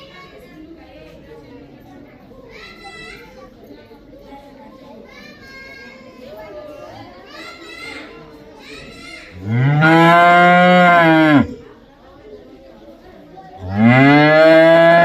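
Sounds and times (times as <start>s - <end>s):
cow mooing: 9.4s - 11.6s, 13.6s - 15.0s.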